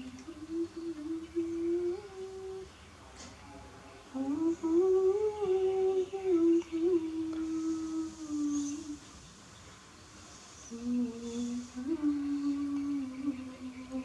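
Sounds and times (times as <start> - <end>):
person humming a slow tune: 0.0 - 2.7, 4.1 - 9.0, 10.7 - 14.0.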